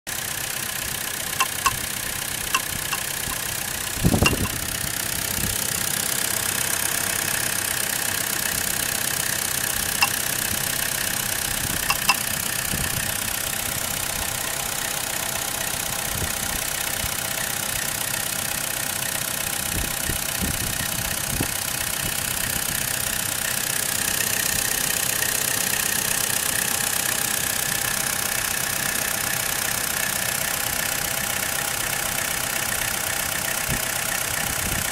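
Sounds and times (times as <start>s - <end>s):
car engine idling with knock: 0.1s - 34.9s
sharp clicks: 1.4s - 1.8s, 2.5s - 3.4s, 4.2s - 4.6s, 11.9s - 12.3s.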